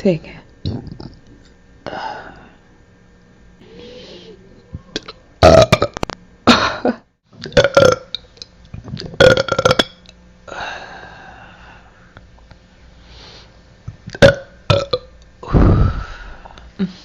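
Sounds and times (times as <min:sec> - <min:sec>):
person burping loudly: 0:04.9 - 0:06.0, 0:07.4 - 0:08.2, 0:09.0 - 0:10.0, 0:14.1 - 0:15.1.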